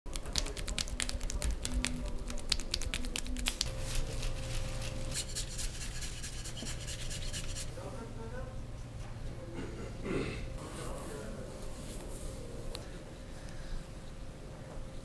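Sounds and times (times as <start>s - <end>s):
hands scratching skin and hair: 0.1s - 7.7s
faint steady hum: 0.1s - 15.0s.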